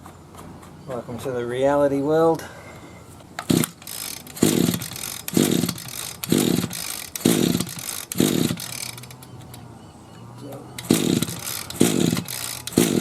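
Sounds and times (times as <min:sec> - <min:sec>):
recoil starter cord pulls: 0:03.4 - 0:09.6, 0:10.8 - 0:13.0
engine cranking: 0:03.4 - 0:09.7, 0:10.6 - 0:13.0.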